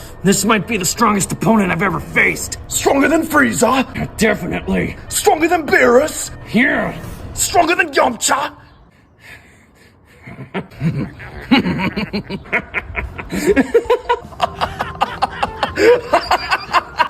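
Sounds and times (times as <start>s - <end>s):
person laughing hard: 10.0s - 17.0s.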